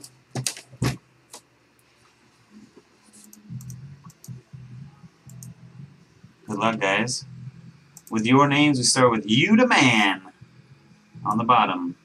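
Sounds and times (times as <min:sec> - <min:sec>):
computer mouse clicking: 0:03.1 - 0:04.4, 0:05.2 - 0:05.6, 0:07.9 - 0:08.2.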